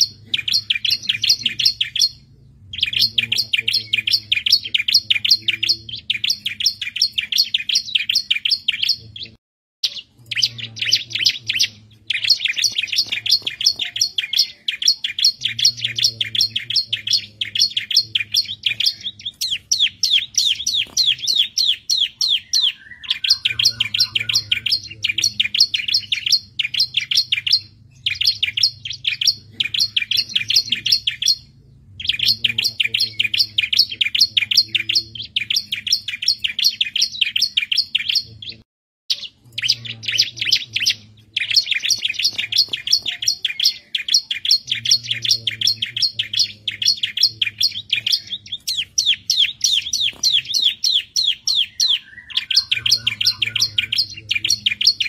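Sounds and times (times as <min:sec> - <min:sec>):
small bird singing high chirps: 0:00.0 - 0:55.0.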